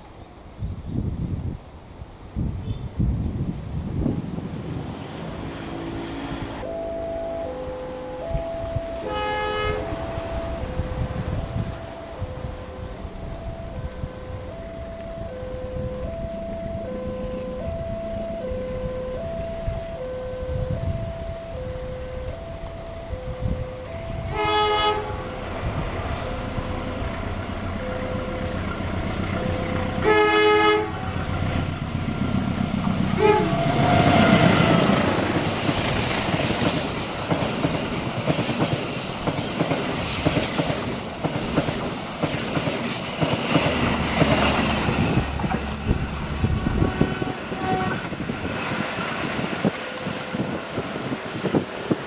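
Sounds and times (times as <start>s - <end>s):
train horn: 7.9s - 12.9s, 23.2s - 37.5s, 44.0s - 51.6s
train wheels clattering on rails: 25.4s - 52.0s.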